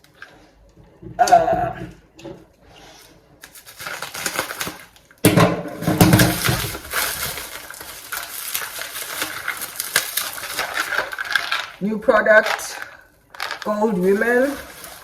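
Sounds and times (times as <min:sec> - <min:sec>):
packaging crinkling: 0:03.0 - 0:05.2, 0:05.8 - 0:15.0.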